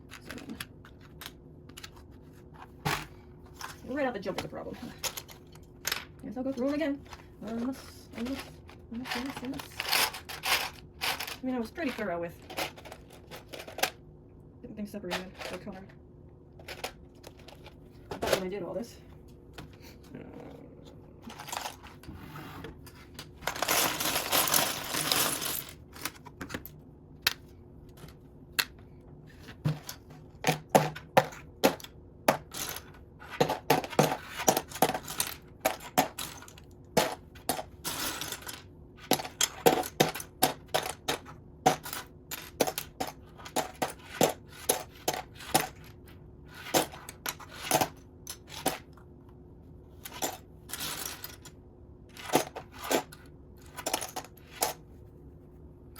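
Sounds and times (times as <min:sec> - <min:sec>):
plastic bricks clattering: 0:23.2 - 0:26.5.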